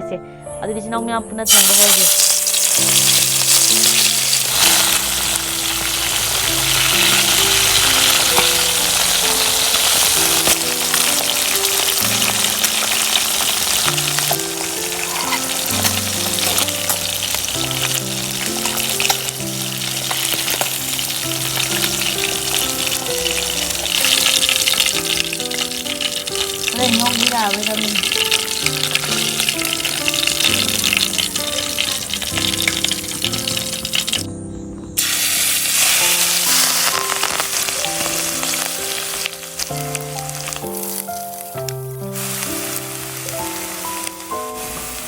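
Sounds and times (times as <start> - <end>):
slow held-note music: 0.0 - 45.0
food sizzling in a pan: 1.4 - 34.3, 35.0 - 45.0
stirring in a pan: 1.5 - 34.2.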